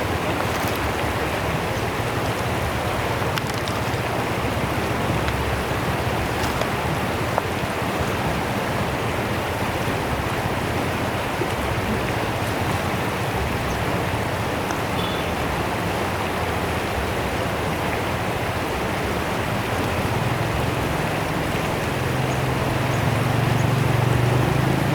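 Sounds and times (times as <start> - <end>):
river water rushing: 0.0 - 24.9.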